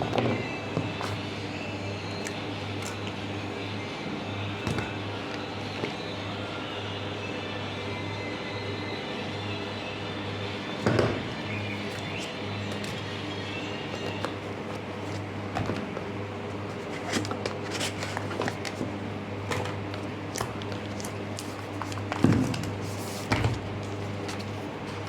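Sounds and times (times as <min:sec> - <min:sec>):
packaging clicks and rustles: 0:16.6 - 0:18.9, 0:19.5 - 0:25.0.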